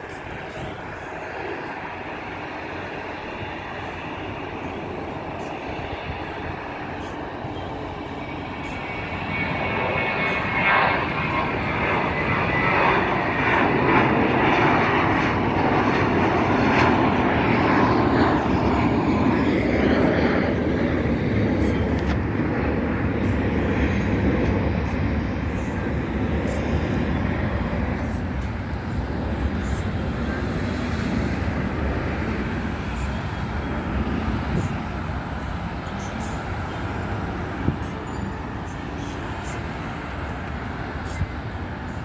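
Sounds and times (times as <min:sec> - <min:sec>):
jet airliner engines rumbling: 0:00.0 - 0:42.0.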